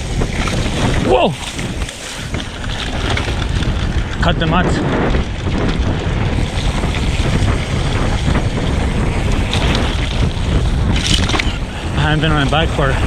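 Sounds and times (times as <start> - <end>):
bike rolling over dirt trail: 0.0 - 13.0
wind rushing over microphone: 0.0 - 13.0.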